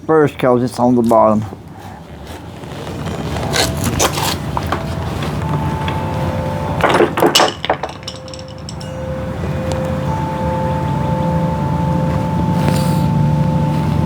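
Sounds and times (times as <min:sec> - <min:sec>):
hands scraping plastic and rubber: 0:01.7 - 0:06.1
steady low hum: 0:02.4 - 0:14.0.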